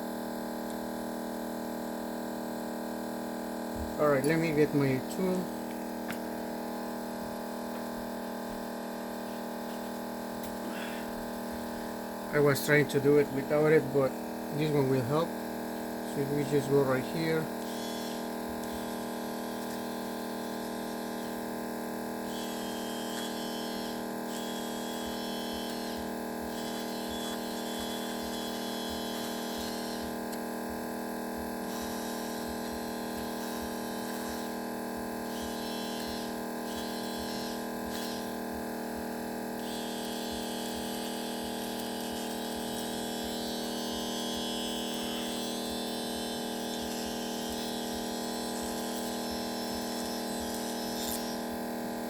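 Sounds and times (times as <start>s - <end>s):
electric machine hum: 0.0s - 52.0s
hand tool scraping phone: 39.6s - 51.4s.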